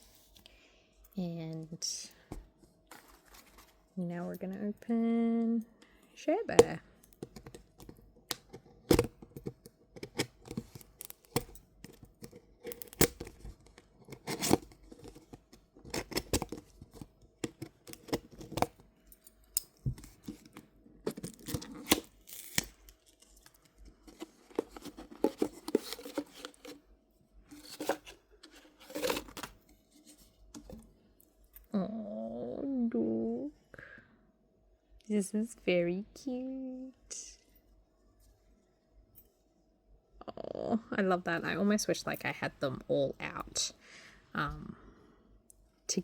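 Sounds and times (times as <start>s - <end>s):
packaging tearing and crinkling: 12.2s - 18.8s, 20.0s - 26.8s, 27.6s - 29.5s.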